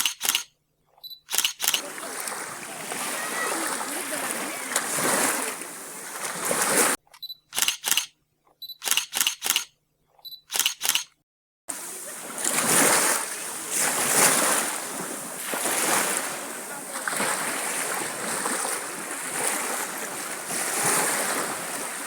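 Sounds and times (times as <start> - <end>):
camera shutter clicks: 0.0 - 0.5, 1.2 - 1.8, 7.1 - 8.1, 8.8 - 9.7, 10.5 - 11.2
sea surf rushing: 1.8 - 7.0, 11.7 - 22.0
short high beep: 8.6 - 9.4.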